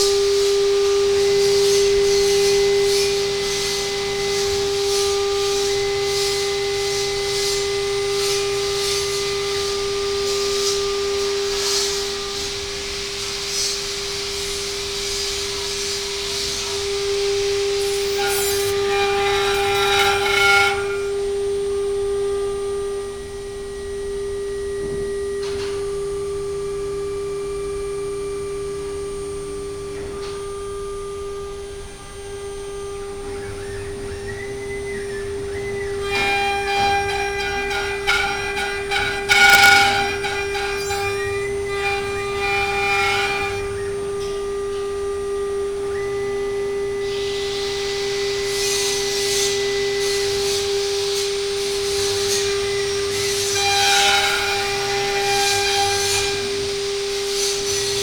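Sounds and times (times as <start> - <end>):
router spindle whine: 0.0 - 25.2, 26.5 - 58.0
router bit cutting wood: 15.7 - 21.3, 35.7 - 44.5, 51.8 - 58.0.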